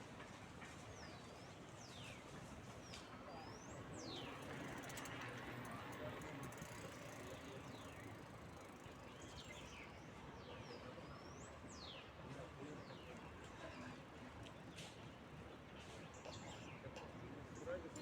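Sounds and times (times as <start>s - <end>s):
faint clicks: 4.3s - 9.5s.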